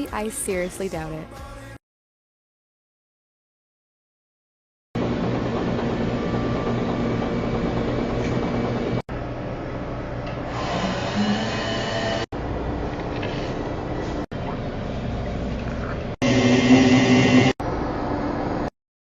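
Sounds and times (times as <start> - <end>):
machine hum: 5.0 - 18.7.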